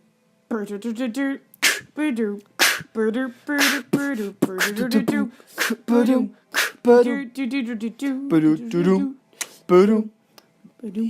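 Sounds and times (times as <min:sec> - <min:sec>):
beatboxing voice singing: 0:00.9 - 0:10.1
hissing snare mouth sound: 0:01.6 - 0:02.0, 0:02.6 - 0:02.9, 0:03.6 - 0:04.9, 0:05.5 - 0:05.9, 0:06.5 - 0:06.9.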